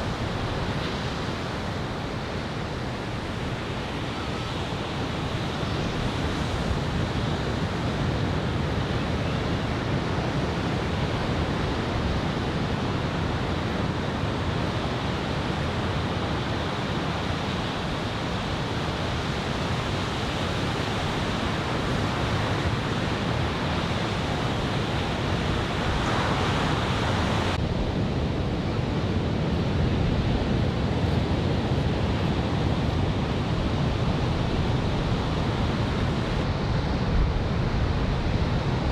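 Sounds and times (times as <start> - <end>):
wind on microphone: 0.0 - 38.9
ocean surf breaking: 11.6 - 27.6.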